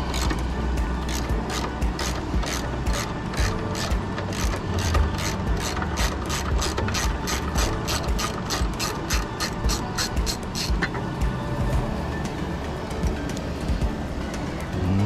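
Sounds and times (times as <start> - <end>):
ratchet wrench clicking: 0.0 - 11.0.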